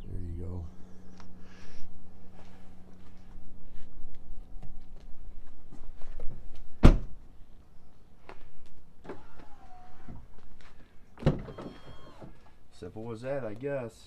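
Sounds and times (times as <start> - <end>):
vehicle door shutting thunk: 6.8 - 7.2, 11.2 - 12.4.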